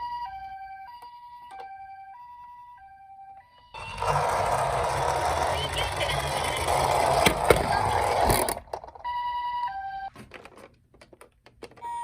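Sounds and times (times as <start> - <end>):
electronic toy siren: 0.0 - 10.1
toy cars rattling down a slope: 3.8 - 9.0
toy cars clattering to a stop: 3.8 - 9.1.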